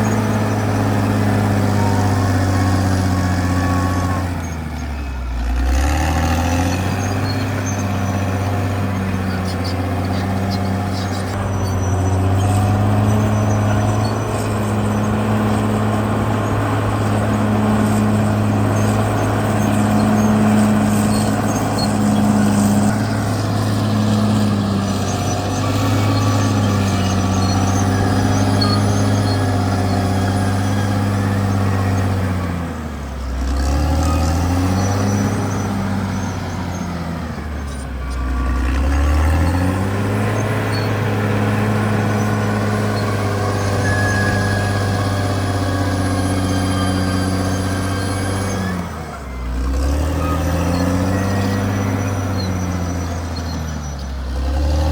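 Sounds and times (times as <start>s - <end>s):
bulldozer diesel engine droning: 0.0s - 54.9s.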